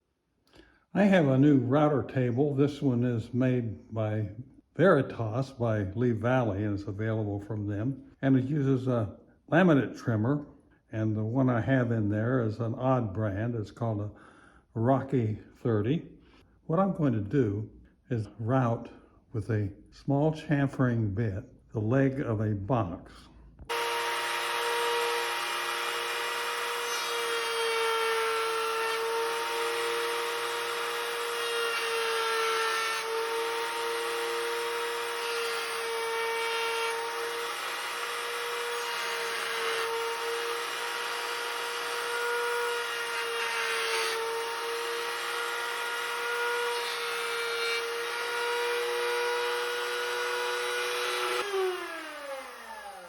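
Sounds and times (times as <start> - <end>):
trimmer motor whining: 23.7 - 43.4, 44.3 - 53.0.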